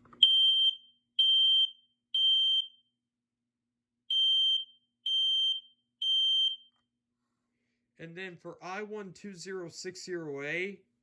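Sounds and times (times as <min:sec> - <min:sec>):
smoke alarm beeping: 0:00.2 - 0:02.9, 0:04.1 - 0:06.8.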